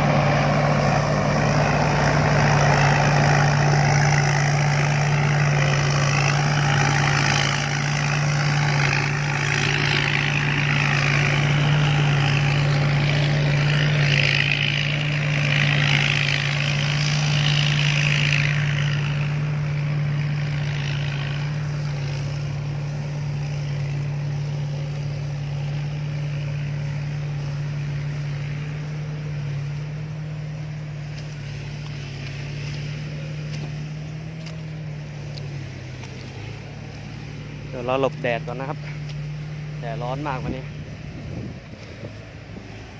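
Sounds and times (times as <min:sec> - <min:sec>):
diesel engine running under load: 0:00.0 - 0:42.9.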